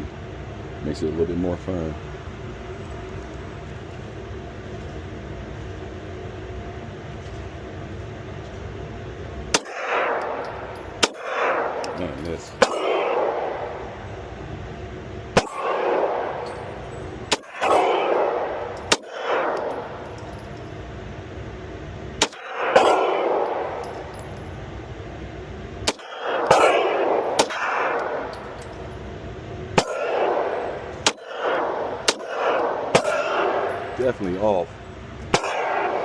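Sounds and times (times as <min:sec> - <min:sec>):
steady low hum: 0:00.0 - 0:36.0
pistol shots: 0:09.5 - 0:14.1, 0:15.3 - 0:20.3, 0:22.2 - 0:24.3, 0:25.8 - 0:28.7, 0:29.7 - 0:34.2, 0:35.3 - 0:36.0.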